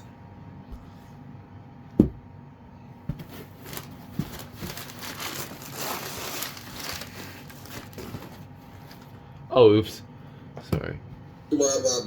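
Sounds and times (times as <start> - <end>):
sharp knock on box: 2.0 - 2.2
packaging crinkling and rustling: 3.1 - 9.2.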